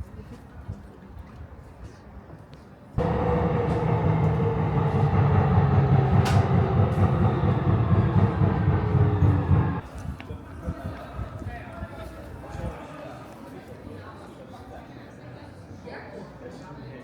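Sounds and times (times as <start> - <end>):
train rumbling: 3.0 - 9.8.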